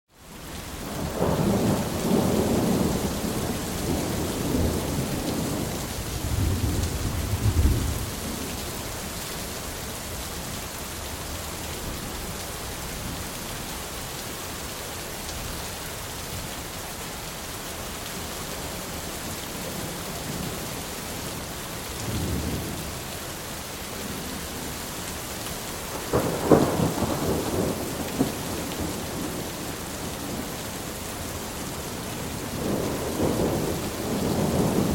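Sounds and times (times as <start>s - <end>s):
steady rain falling: 0.1s - 34.9s
thunder rolling: 1.2s - 8.4s, 25.9s - 30.5s.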